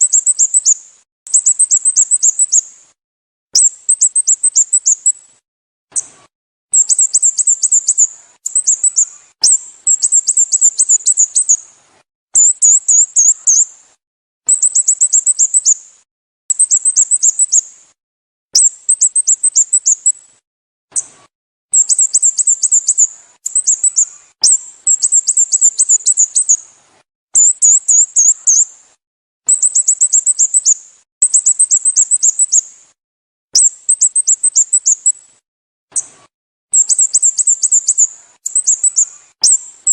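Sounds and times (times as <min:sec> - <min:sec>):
bulbul high chirps: 0:06.7 - 0:11.6, 0:21.7 - 0:26.6, 0:27.4 - 0:28.7, 0:29.5 - 0:32.6, 0:33.6 - 0:35.2, 0:36.7 - 0:39.9.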